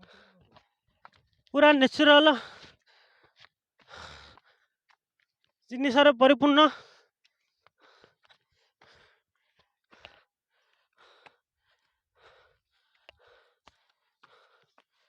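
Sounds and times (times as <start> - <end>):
faint breaths: 0.0 - 1.3, 2.4 - 4.8, 6.7 - 15.0.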